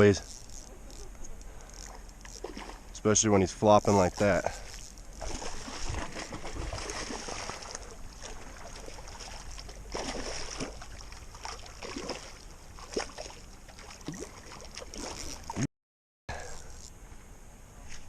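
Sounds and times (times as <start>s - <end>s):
water splashing and sloshing: 1.8s - 3.3s, 3.9s - 15.7s.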